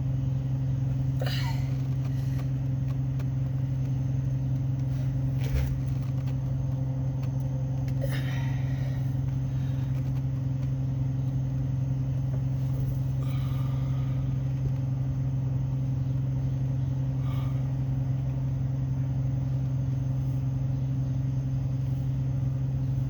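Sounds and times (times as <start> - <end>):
low mechanical drone: 0.0 - 23.0.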